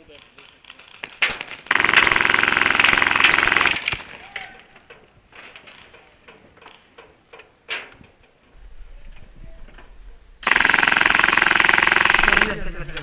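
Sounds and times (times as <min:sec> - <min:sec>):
airsoft gun full-auto burst: 0:01.2 - 0:04.5, 0:10.4 - 0:13.0.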